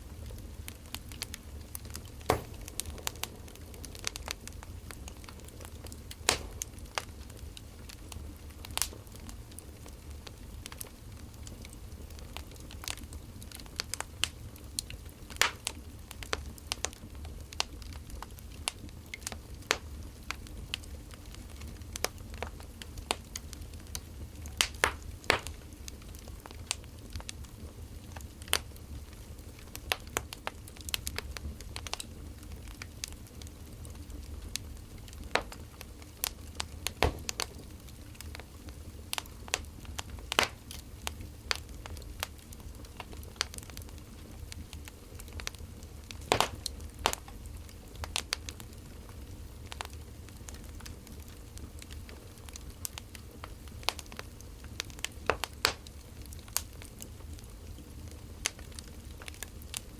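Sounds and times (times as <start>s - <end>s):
burning firewood crackling: 0.0s - 59.9s
steady low rumble: 2.4s - 7.3s.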